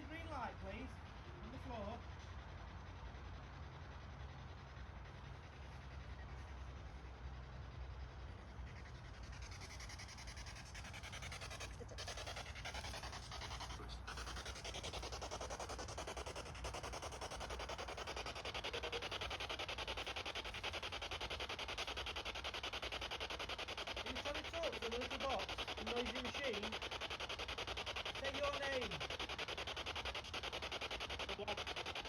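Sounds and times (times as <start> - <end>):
choppy radio static hiss: 16.5 - 32.0.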